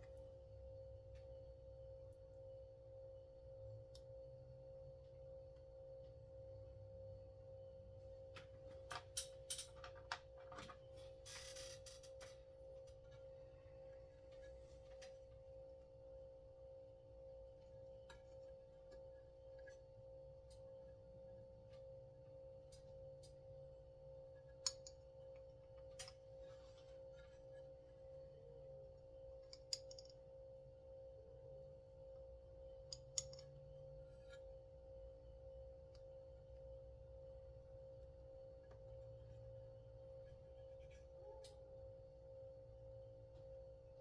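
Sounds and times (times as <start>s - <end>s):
faint steady hum: 0.0s - 44.0s
small sharp clicks of parts: 8.4s - 12.4s, 29.4s - 30.2s, 32.9s - 33.5s.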